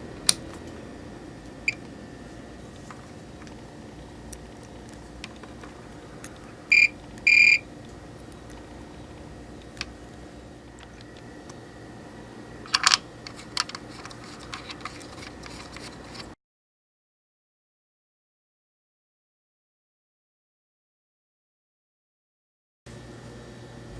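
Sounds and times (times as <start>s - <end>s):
steady electrical hum: 0.0s - 16.4s, 22.9s - 23.9s
short electronic beeps: 6.7s - 7.6s.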